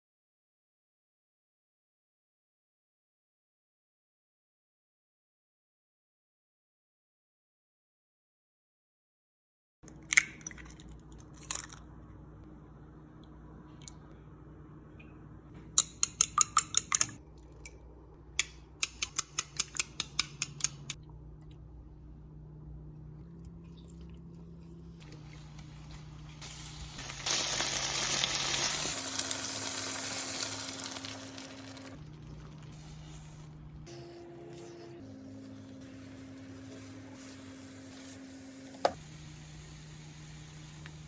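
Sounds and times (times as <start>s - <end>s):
utensil clicking against bowl: 15.8s - 17.8s, 18.4s - 21.0s
food sizzling in hot oil: 25.2s - 33.4s.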